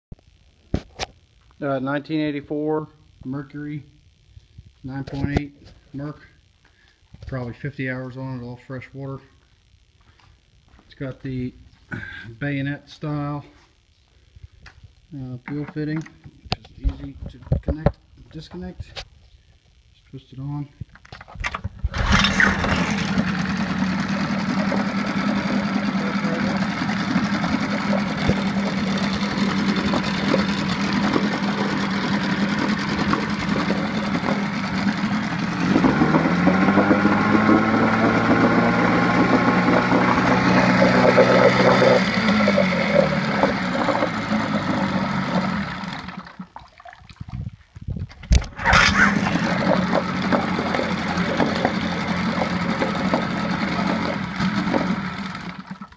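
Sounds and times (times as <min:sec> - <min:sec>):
outboard motor running: 0:21.8 - 0:46.6, 0:48.4 - 0:55.9.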